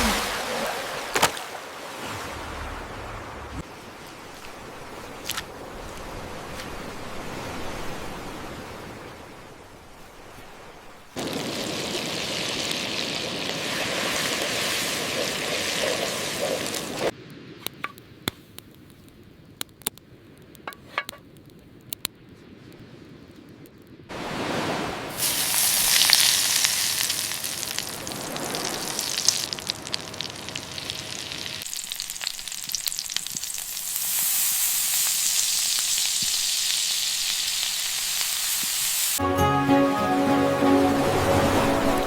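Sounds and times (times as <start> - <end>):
lobster and butter sizzling: 11.2 - 17.1, 25.1 - 39.2
sharp clicks and knocks: 20.6 - 21.6.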